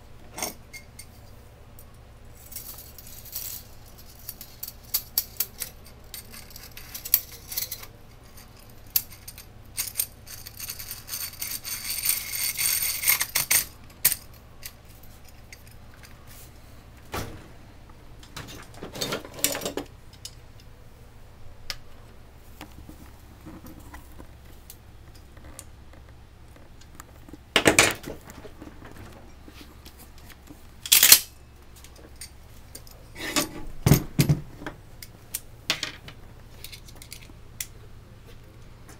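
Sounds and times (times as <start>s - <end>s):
metal gun parts clicking and rattling: 2.5s - 16.1s, 30.8s - 31.4s, 35.8s - 37.4s.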